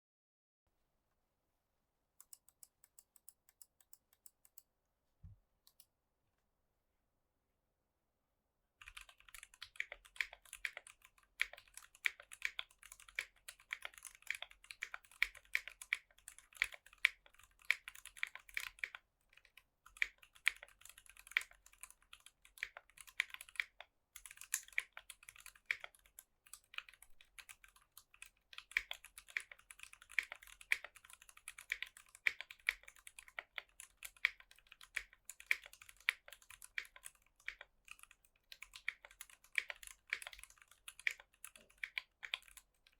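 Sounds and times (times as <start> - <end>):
mechanical keyboard typing: 8.8 - 42.9.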